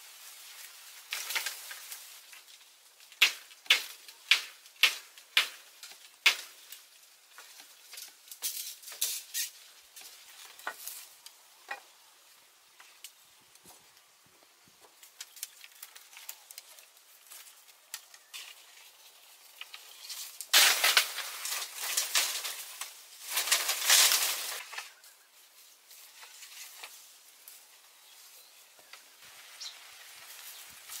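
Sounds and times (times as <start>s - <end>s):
rustling: 0.0s - 31.0s
small clicks and snaps: 14.9s - 18.6s.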